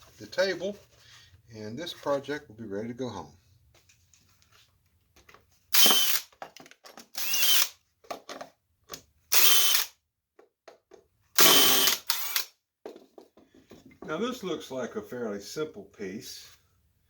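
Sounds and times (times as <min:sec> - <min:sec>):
power drill bursts: 0:05.7 - 0:06.3, 0:07.1 - 0:07.7, 0:09.3 - 0:09.9, 0:11.4 - 0:12.5
light clicks and handling knocks: 0:10.4 - 0:11.1.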